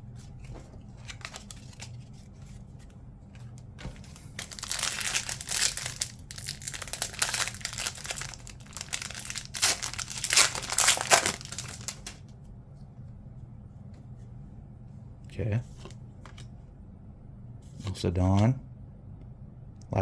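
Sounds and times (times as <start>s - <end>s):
foil wrapper crinkling and tearing: 4.0s - 12.2s.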